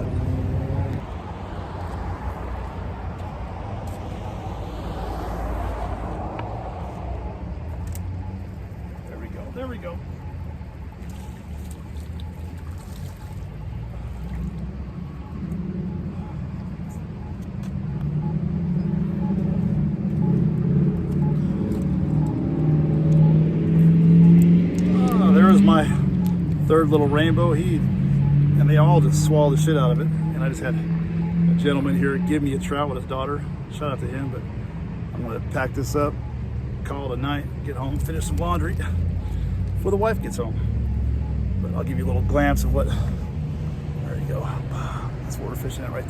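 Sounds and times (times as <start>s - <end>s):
road traffic rumble: 0.0s - 46.0s
short faint beeps: 7.2s - 24.4s, 28.1s - 32.7s, 35.2s - 46.0s.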